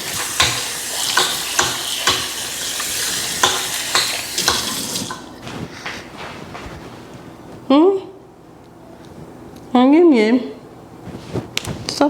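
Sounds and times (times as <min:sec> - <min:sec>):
food sizzling in a pan: 0:00.0 - 0:05.3.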